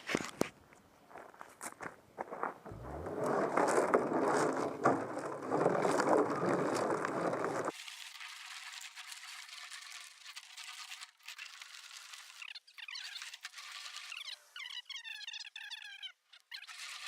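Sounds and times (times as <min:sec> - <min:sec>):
metallic rattling and scraping: 0:02.6 - 0:07.7.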